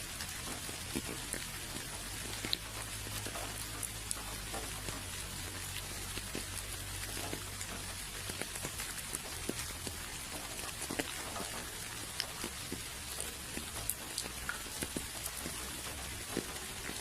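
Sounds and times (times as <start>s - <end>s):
raindrops ticking on surfaces: 0.0s - 17.0s
steady rainfall: 0.0s - 17.0s.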